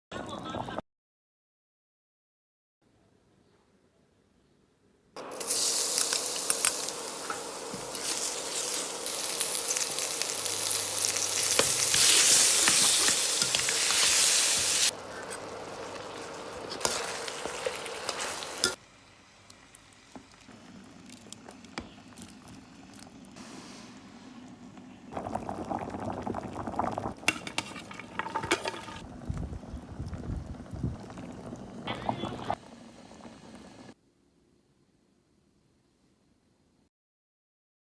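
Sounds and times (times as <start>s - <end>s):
food sizzling in a pan: 5.2s - 23.7s, 25.2s - 33.9s.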